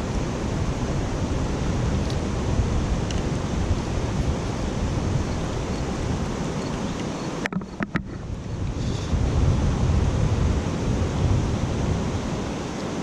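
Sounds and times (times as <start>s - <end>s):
river water rushing: 0.0s - 13.0s
wind rumbling on microphone: 0.0s - 13.0s.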